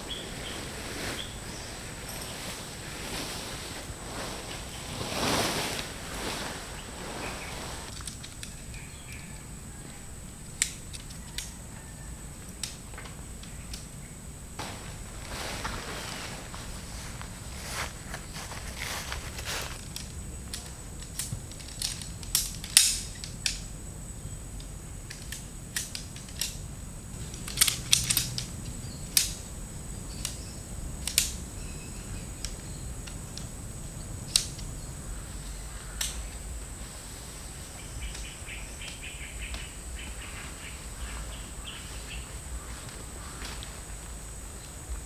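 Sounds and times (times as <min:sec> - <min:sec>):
faint chirping: 0:00.0 - 0:21.0, 0:26.6 - 0:45.0
sharp snaps and clicks: 0:07.9 - 0:09.4, 0:10.5 - 0:11.6, 0:12.3 - 0:14.0, 0:19.8 - 0:23.7, 0:24.6 - 0:29.5, 0:30.1 - 0:31.5, 0:34.2 - 0:34.8, 0:35.8 - 0:36.5, 0:38.0 - 0:39.7.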